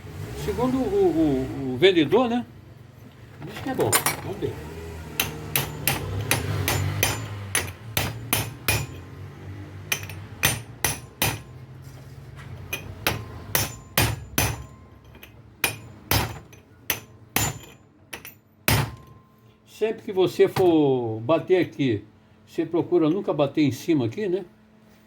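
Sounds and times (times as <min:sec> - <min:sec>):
hammer striking metal: 0:05.1 - 0:09.2, 0:09.8 - 0:11.6, 0:12.7 - 0:19.4.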